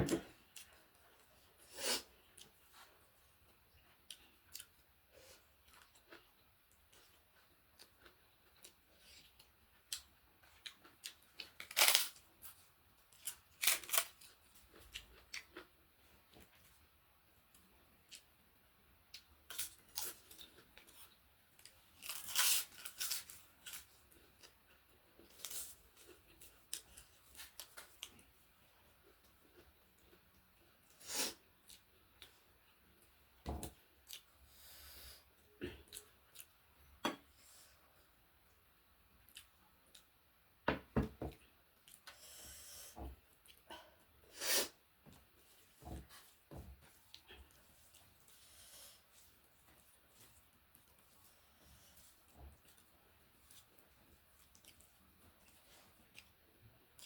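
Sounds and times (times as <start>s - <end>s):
chewing and mouth noises: 52.6s - 56.4s.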